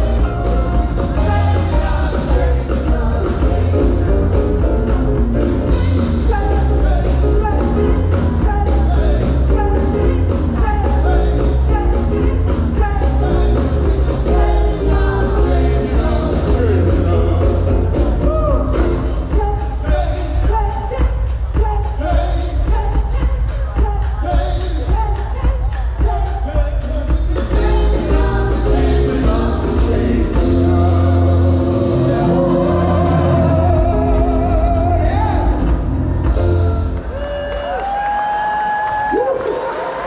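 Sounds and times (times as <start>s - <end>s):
choir singing: 0.0s - 20.9s, 27.4s - 37.2s
heavy bass: 0.0s - 37.8s
drum beat: 0.0s - 40.0s.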